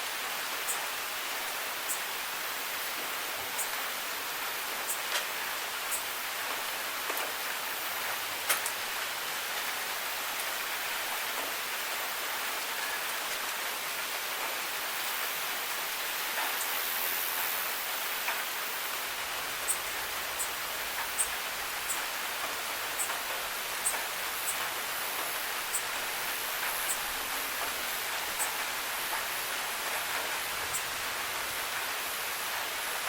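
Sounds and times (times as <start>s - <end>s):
steady rain hiss: 0.0s - 33.0s
water drip ticks: 19.6s - 31.9s.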